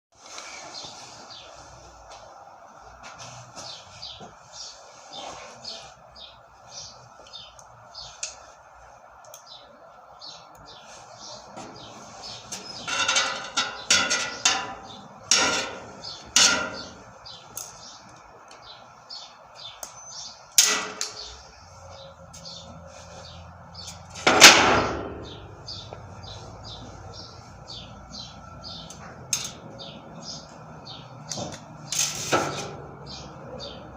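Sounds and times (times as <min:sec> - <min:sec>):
small birds chirping: 0:00.2 - 0:02.5, 0:03.5 - 0:24.2, 0:25.1 - 0:33.9
loud sharp knocks: 0:24.2 - 0:25.5.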